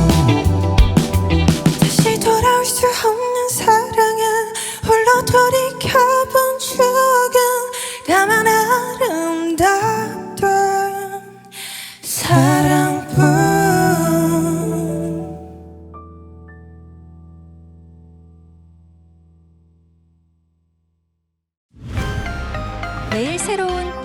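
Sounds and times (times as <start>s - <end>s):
band accompaniment: 0.0s - 2.3s
person singing ballad: 0.0s - 15.6s.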